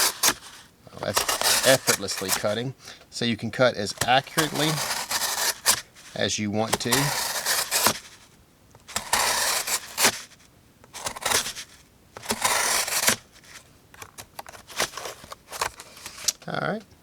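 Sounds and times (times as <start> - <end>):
knife slicing cardboard: 0.0 - 2.6, 3.8 - 8.2, 8.9 - 10.4, 11.0 - 13.6, 14.6 - 16.3.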